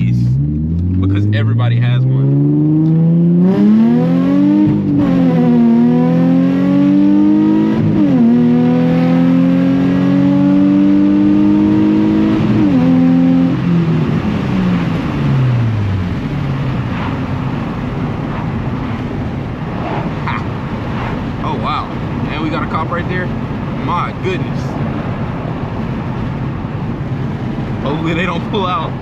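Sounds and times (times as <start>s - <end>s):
car engine revving: 0.0s - 29.0s
road and wind noise: 0.0s - 29.0s.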